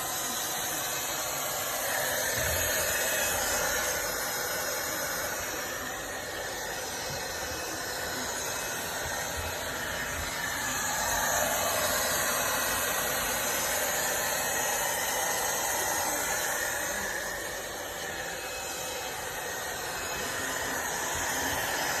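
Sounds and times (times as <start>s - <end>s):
vacuum cleaner running: 0.0s - 22.0s.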